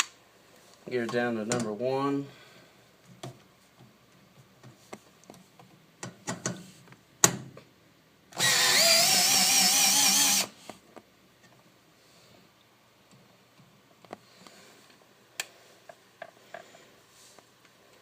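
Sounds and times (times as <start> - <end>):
cordless drill motor whining: 8.4 - 10.6.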